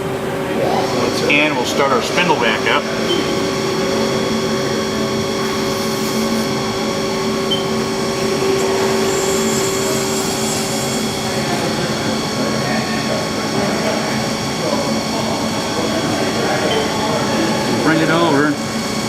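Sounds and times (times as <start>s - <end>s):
lathe spindle humming: 0.0s - 19.0s.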